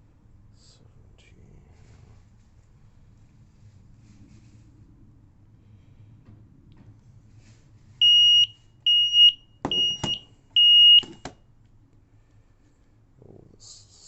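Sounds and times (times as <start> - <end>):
alarm high beeps: 8.0 - 11.2.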